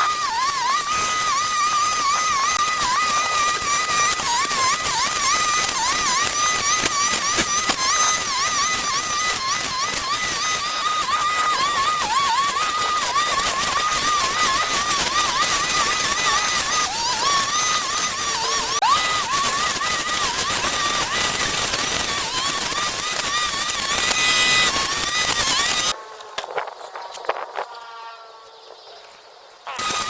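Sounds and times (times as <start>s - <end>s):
crackling: 0.0s - 27.7s, 29.7s - 30.0s
small motor whining: 0.0s - 28.8s, 29.7s - 30.0s.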